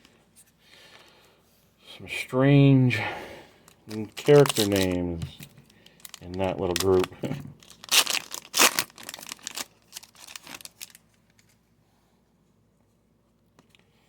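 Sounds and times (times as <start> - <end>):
wrapper crinkling and tearing: 3.9 - 11.5.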